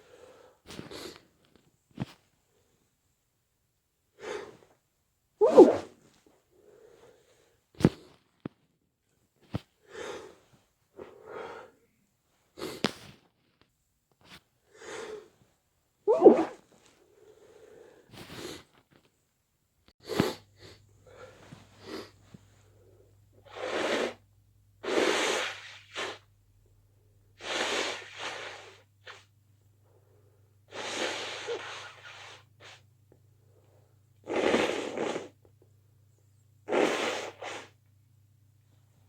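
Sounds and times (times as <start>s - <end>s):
person sneezing quietly: 16.1s - 16.6s.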